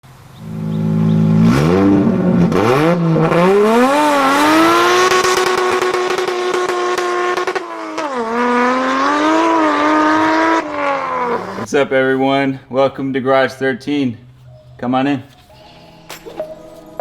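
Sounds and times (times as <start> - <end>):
car engine revving: 0.1 - 11.7.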